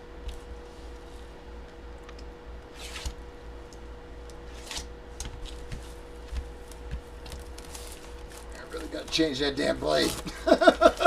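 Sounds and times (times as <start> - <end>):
blade scraping cellophane: 2.7 - 3.2, 4.5 - 4.9, 9.9 - 10.3
plastic crinkling: 6.8 - 11.0.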